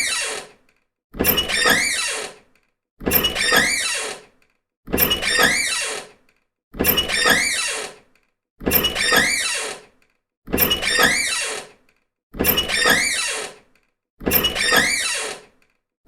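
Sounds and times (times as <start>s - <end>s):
squeaky door creaking open: 0.0s - 0.5s, 1.2s - 2.4s, 3.0s - 4.3s, 4.9s - 6.2s, 6.8s - 8.0s, 8.6s - 9.9s, 10.5s - 11.8s, 12.4s - 13.6s, 14.2s - 15.6s.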